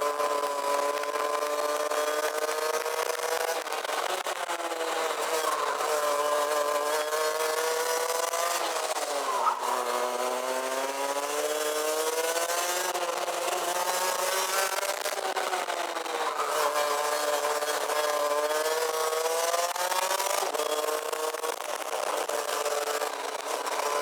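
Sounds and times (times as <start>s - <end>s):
kart two-stroke engine revving: 0.0s - 24.0s.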